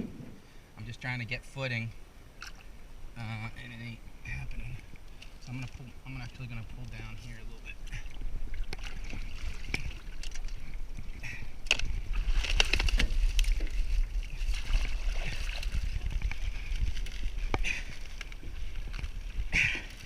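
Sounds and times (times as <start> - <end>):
water sloshing and splashing: 2.3 - 2.9, 4.6 - 20.0.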